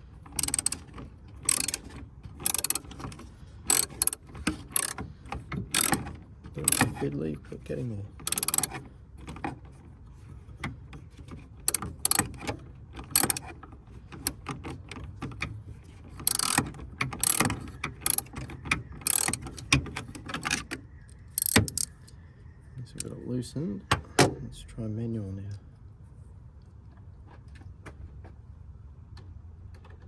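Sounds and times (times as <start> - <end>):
socket ratchet clicking: 0.3 - 3.0, 3.7 - 5.0, 5.7 - 6.1, 6.7 - 7.0, 8.2 - 8.8, 11.7 - 12.4, 13.1 - 13.5, 16.2 - 18.3, 19.0 - 19.7, 21.3 - 22.0.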